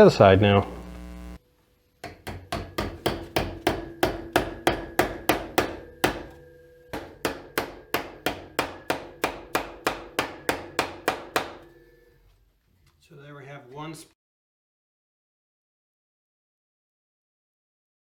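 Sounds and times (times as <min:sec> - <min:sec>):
hammer striking tacks: 0:02.0 - 0:11.8.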